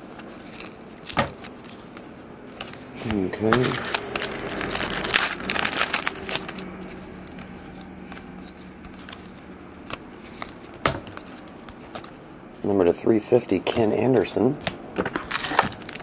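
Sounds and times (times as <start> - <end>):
wrapper tearing and crinkling: 0.1 - 2.0, 3.5 - 10.6, 15.1 - 16.0.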